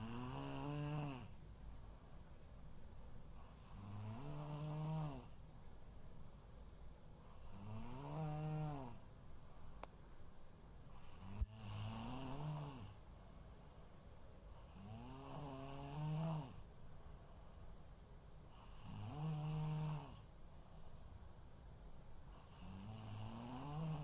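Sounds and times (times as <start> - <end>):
person snoring: 0.0 - 1.4, 3.4 - 5.4, 7.4 - 9.0, 11.0 - 13.0, 14.6 - 16.6, 18.5 - 20.3, 22.4 - 24.0.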